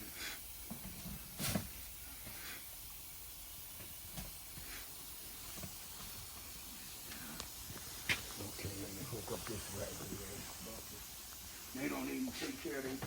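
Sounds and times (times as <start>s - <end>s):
low steady hiss: 0.0s - 13.0s.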